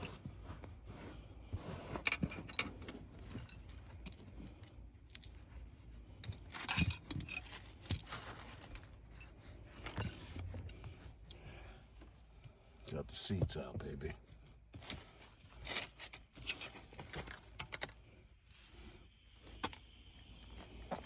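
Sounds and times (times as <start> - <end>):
metallic clinks and rattles: 0.0 - 0.6, 1.6 - 11.0, 15.5 - 18.0
scraping rustle: 5.2 - 11.2, 14.8 - 17.7.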